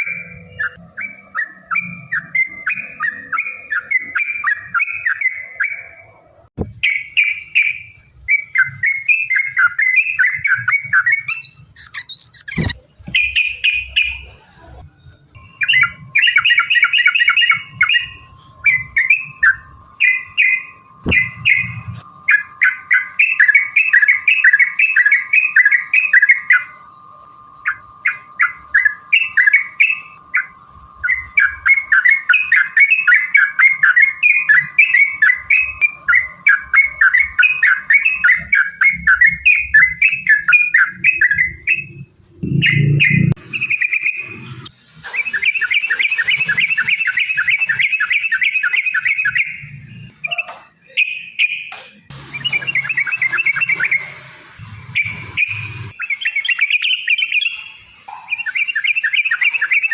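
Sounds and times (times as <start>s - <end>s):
bulbuls singing chattering notes: 0.0s - 59.9s
low thumps: 21.0s - 22.0s.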